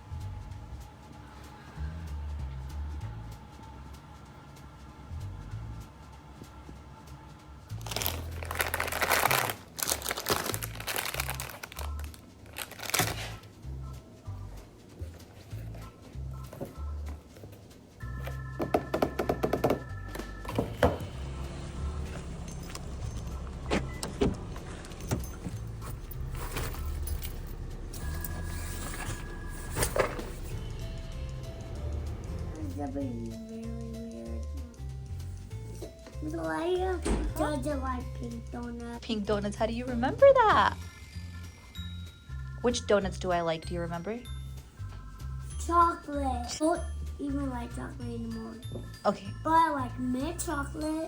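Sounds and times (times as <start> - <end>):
background music with bass line: 0.0 - 4.3
packaging crinkling: 7.8 - 13.4
car driving rumble: 20.6 - 34.0.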